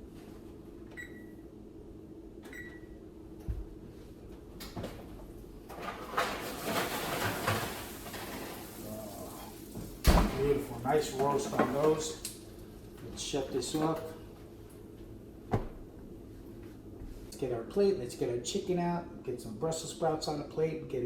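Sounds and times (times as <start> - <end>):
baking tray rattling and scraping: 5.7 - 9.4.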